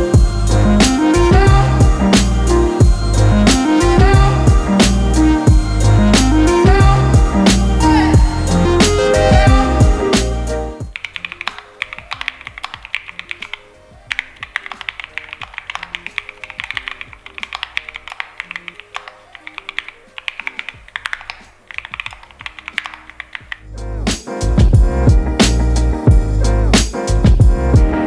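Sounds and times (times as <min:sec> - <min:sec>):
soft background music: 0:00.0 - 0:28.0
mechanical keyboard typing: 0:10.9 - 0:23.6.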